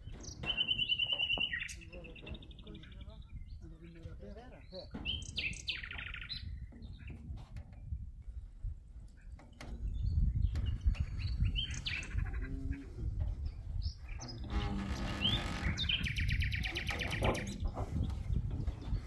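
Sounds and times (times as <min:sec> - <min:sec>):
small birds chirping: 0:00.0 - 0:08.0, 0:09.1 - 0:19.0.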